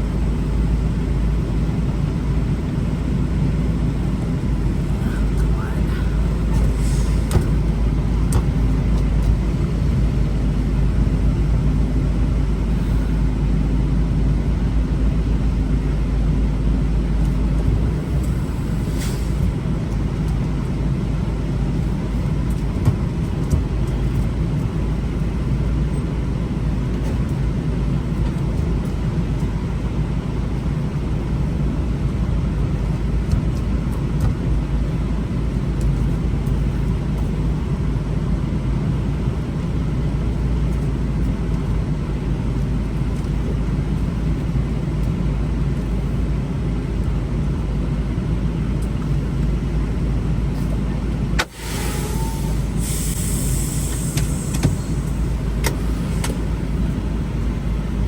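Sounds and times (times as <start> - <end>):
truck engine rumbling: 0.0 - 58.0
short air hiss: 51.4 - 56.4.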